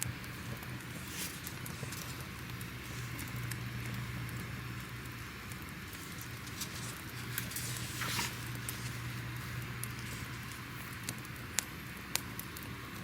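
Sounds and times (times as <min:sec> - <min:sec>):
fire pops and snaps: 0:00.0 - 0:12.7
fire crackling: 0:00.0 - 0:13.0
steady hiss and low hum: 0:00.0 - 0:13.0.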